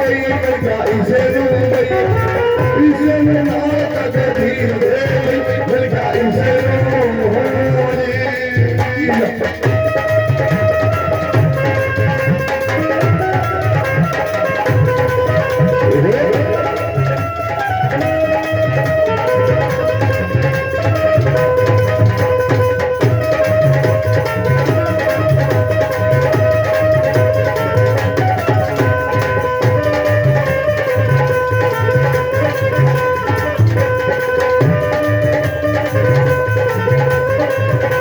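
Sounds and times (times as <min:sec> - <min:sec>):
hand drum rhythm: 0:00.0 - 0:38.0
melody instrument holding notes: 0:12.8 - 0:17.6.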